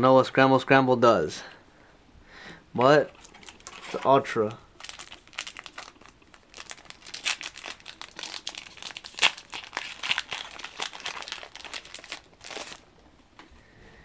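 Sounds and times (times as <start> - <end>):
foil wrapper crinkling and tearing: 3.1 - 12.9.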